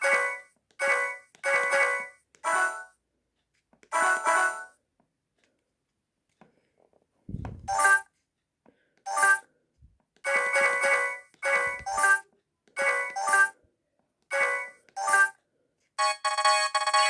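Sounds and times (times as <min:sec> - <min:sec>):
mobile phone ringtone: 0:00.0 - 0:02.9, 0:04.0 - 0:04.7, 0:07.7 - 0:08.1, 0:09.1 - 0:09.5, 0:10.3 - 0:13.6, 0:14.3 - 0:15.4, 0:16.0 - 0:17.0
soft low thump: 0:07.3 - 0:07.8.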